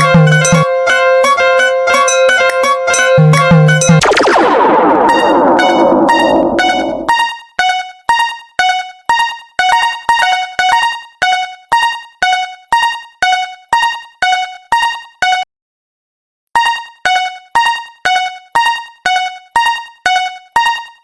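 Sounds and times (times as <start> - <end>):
railroad crossing alarm bell: 0.1 - 0.7, 1.9 - 4.0
loud wash of sound: 4.0 - 7.1.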